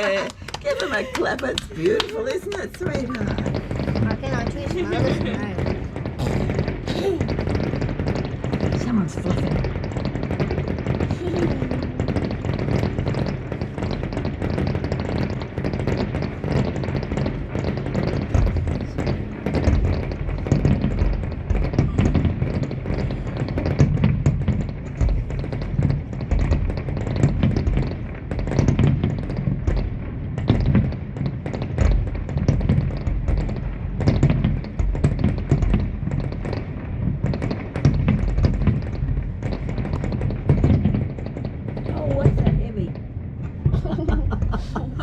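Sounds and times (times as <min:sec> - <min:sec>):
low rumble: 0:00.0 - 0:15.8, 0:34.6 - 0:45.0
fireworks bangs and crackles: 0:00.0 - 0:45.0.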